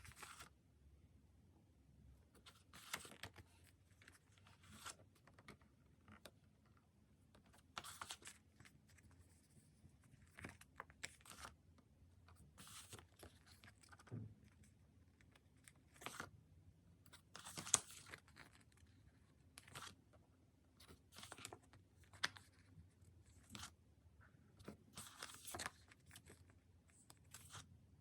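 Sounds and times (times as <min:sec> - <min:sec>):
paper being handled: 0:02.4 - 0:05.4, 0:24.6 - 0:26.4.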